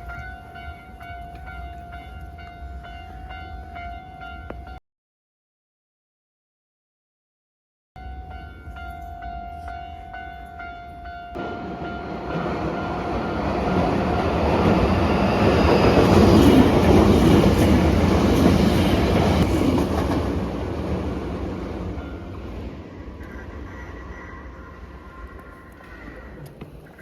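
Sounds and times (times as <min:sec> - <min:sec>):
level crossing warning bell: 0:00.0 - 0:04.8, 0:08.0 - 0:22.9
electric train passing: 0:08.0 - 0:27.0.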